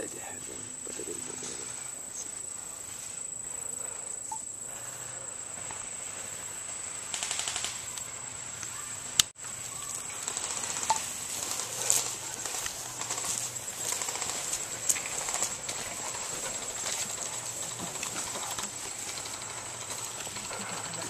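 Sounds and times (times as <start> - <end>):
high insect drone: 0.0 - 21.0
airsoft guns firing bursts: 7.0 - 8.0, 10.0 - 17.4.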